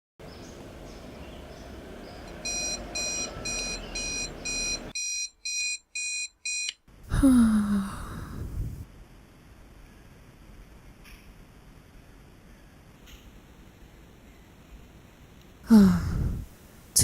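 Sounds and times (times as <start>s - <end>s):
high-pitched electronic alarm beeping: 2.4s - 6.7s.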